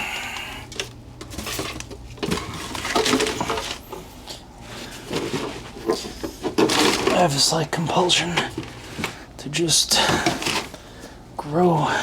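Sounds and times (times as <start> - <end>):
garden pots clattering: 1.2 - 3.9, 5.0 - 9.2.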